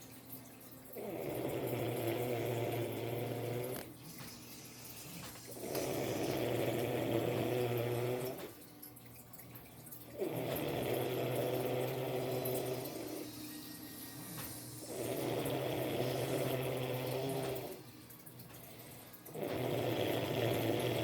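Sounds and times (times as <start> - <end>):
loud snoring: 1.0 - 3.9, 5.5 - 8.5, 10.2 - 13.5, 14.8 - 17.8, 19.3 - 21.0
quiet breathing: 1.0 - 8.5, 10.2 - 21.0.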